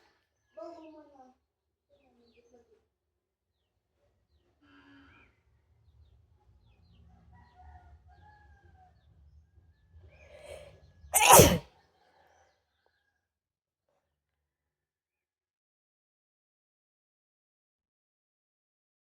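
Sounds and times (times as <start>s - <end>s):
person sneezing: 11.2s - 11.6s.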